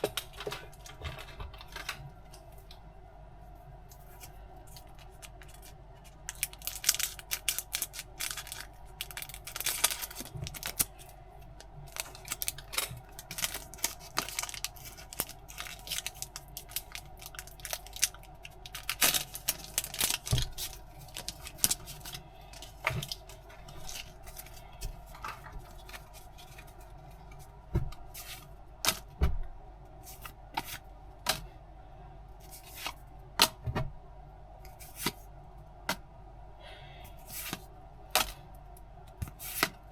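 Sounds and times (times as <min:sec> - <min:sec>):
packaging crinkling: 0:04.1 - 0:27.4
packaging ripping: 0:06.3 - 0:10.9, 0:11.9 - 0:26.7.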